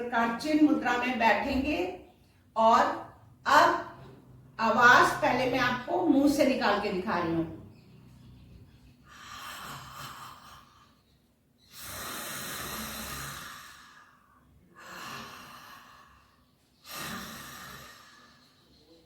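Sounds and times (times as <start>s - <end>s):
slow hissing breaths: 9.0s - 19.0s.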